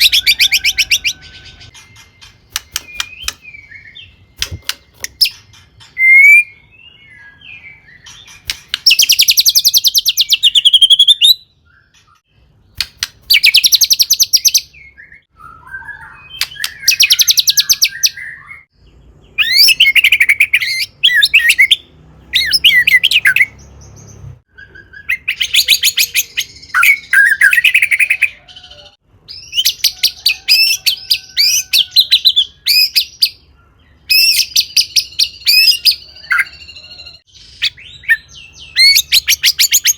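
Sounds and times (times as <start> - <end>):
bird singing: 0.0 - 39.9.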